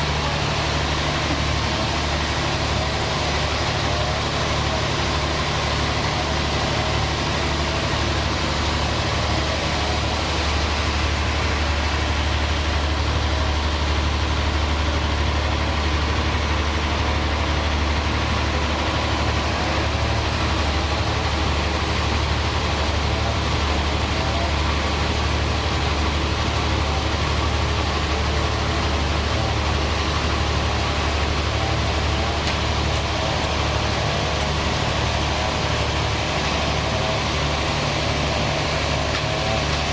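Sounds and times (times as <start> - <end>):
sawmill machinery humming: 0.0 - 39.9.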